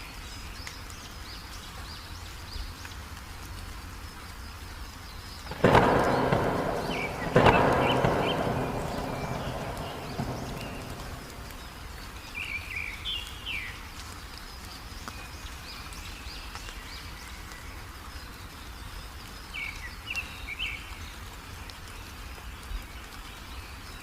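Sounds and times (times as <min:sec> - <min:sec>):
heavy rain hissing: 0:00.0 - 0:24.0
songbird calling: 0:05.2 - 0:13.8
low rumble: 0:05.5 - 0:12.3.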